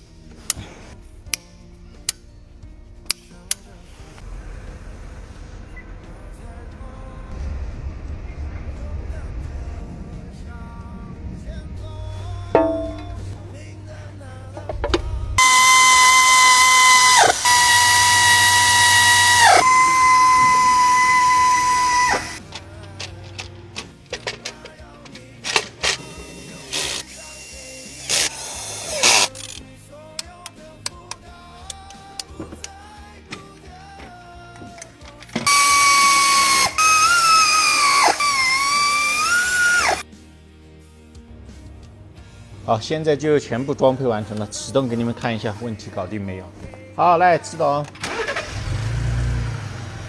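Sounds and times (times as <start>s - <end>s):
power tool motor whining: 15.4s - 23.5s, 25.5s - 29.6s, 35.3s - 40.0s, 48.0s - 50.0s.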